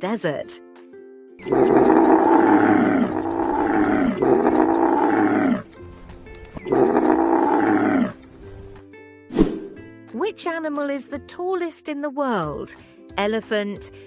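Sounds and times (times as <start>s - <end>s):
camel groaning: 1.4s - 5.8s, 6.6s - 8.5s.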